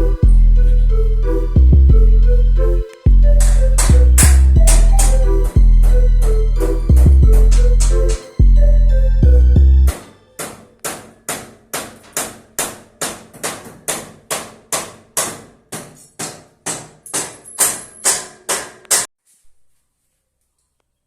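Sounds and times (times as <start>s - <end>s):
hammer blows: 3.4s - 8.4s, 9.9s - 19.1s.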